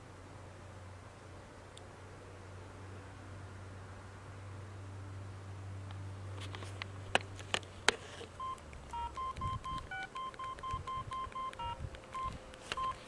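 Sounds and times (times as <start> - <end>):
phone keypad beeps: 8.4 - 13.0
sharp clicks: 8.4 - 13.0.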